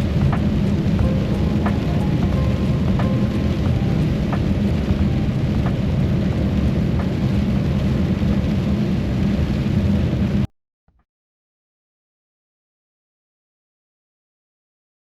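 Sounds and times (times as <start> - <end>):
heavy engine rumbling: 0.0 - 9.9.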